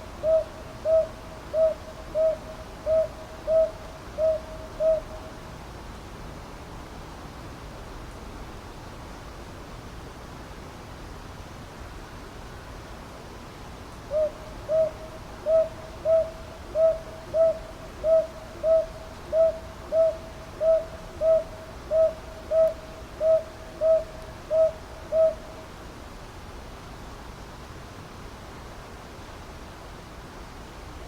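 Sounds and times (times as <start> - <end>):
owl hooting: 0.2 - 5.3, 14.1 - 25.5.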